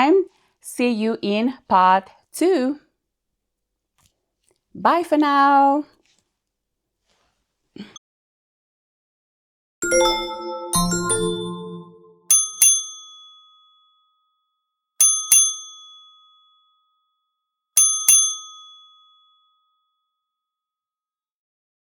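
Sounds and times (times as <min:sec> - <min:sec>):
small bell dinging: 0:12.3 - 0:14.3, 0:15.0 - 0:17.2, 0:17.8 - 0:20.0.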